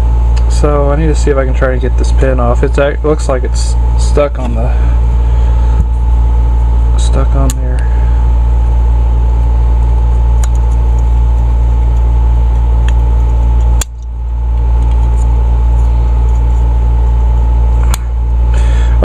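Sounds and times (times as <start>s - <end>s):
low machine hum: 0.0s - 19.0s
steady higher tone: 0.0s - 19.0s
sharp metallic clicks: 7.4s - 7.9s.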